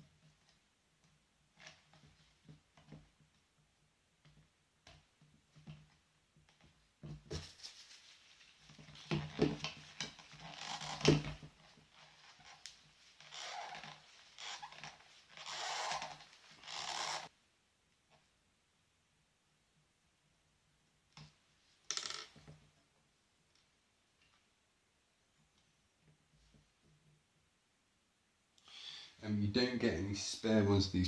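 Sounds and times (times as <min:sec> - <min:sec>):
rustling and scraping: 0:05.3 - 0:17.3.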